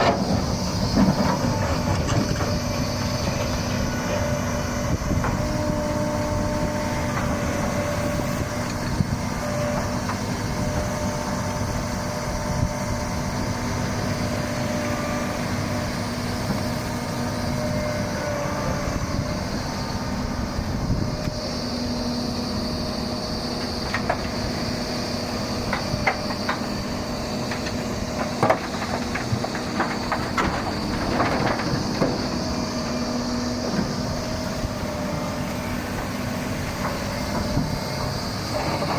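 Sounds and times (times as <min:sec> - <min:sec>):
excavator diesel engine running: 0:00.0 - 0:38.9
sharp clanks and knocks: 0:27.4 - 0:32.7.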